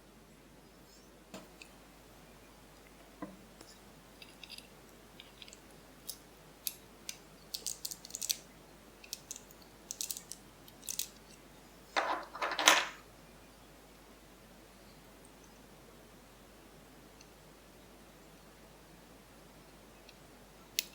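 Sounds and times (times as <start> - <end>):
lock pick clicking in lock: 7.6 - 8.4.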